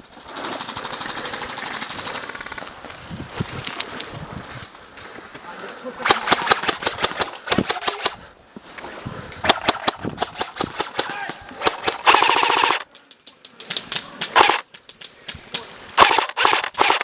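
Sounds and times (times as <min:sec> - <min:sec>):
airsoft guns firing bursts: 0:06.0 - 0:08.2, 0:09.4 - 0:14.8, 0:15.5 - 0:17.0.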